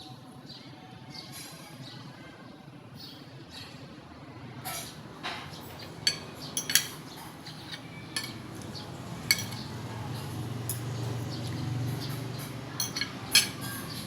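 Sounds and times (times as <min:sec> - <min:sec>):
cutlery clinking against plates: 0:04.6 - 0:14.0.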